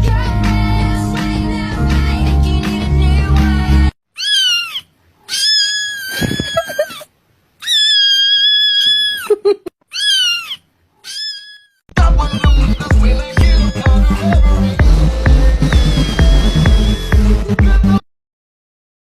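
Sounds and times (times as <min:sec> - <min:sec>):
background music: 0:00.0 - 0:03.9, 0:12.0 - 0:18.0
cat meowing: 0:04.2 - 0:07.0, 0:07.6 - 0:09.3, 0:09.9 - 0:14.5, 0:15.7 - 0:17.2.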